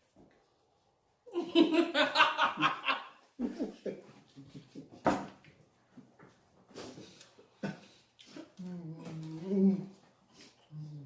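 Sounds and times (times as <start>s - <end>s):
people laughing: 1.3s - 4.9s.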